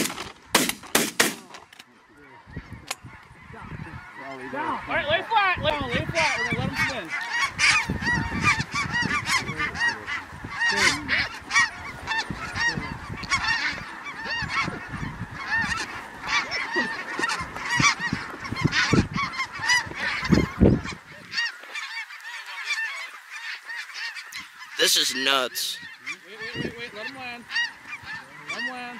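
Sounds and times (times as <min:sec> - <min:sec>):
geese honking: 0:00.0 - 0:28.9
wind rumble on microphone: 0:02.4 - 0:16.4, 0:17.3 - 0:21.4.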